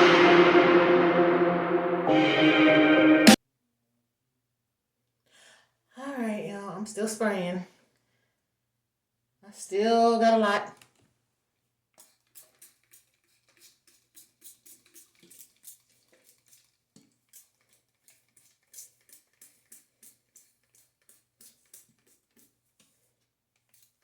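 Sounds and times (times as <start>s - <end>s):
spray bottle squirts: 12.0s - 22.5s.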